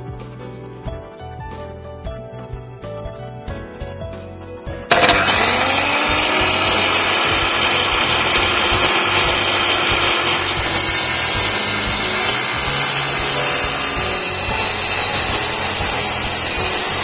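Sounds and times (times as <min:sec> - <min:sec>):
tile saw motor whining: 0:04.9 - 0:17.0.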